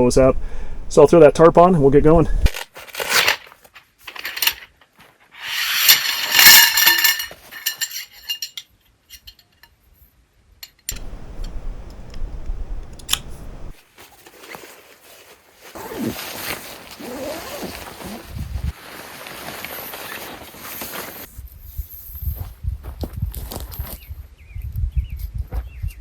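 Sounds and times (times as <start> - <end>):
metal pieces clinking: 4.0 - 4.7, 5.4 - 9.4
low rumble: 11.0 - 13.8.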